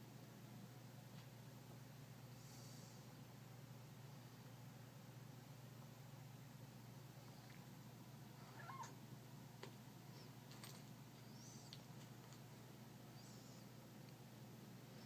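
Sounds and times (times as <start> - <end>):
cat chirping: 8.4 - 9.0.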